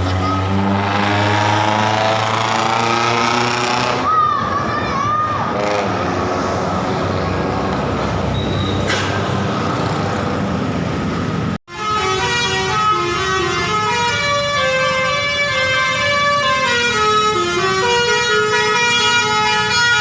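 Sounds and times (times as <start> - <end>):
bus horn playing a melody: 11.7 - 20.0.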